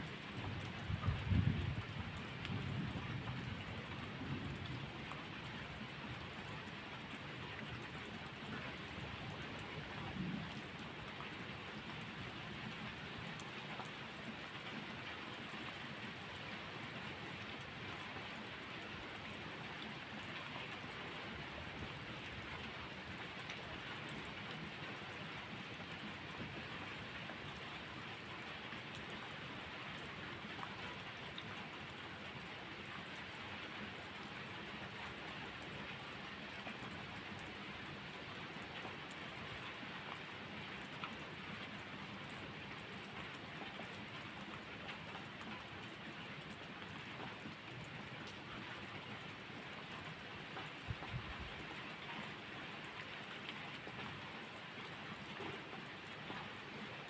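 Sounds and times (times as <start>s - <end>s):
steady rain hissing: 0.1s - 30.4s.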